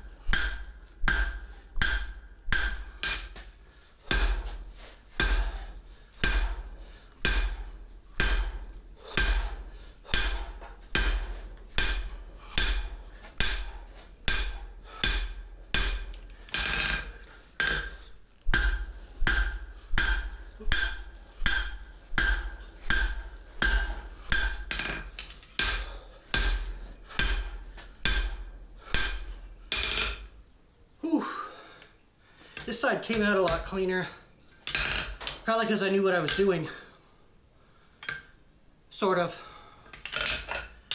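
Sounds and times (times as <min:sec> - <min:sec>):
hammer striking steel on anvil: 0:00.0 - 0:03.5, 0:04.1 - 0:04.6, 0:05.2 - 0:05.6, 0:06.2 - 0:16.3, 0:17.6 - 0:30.3.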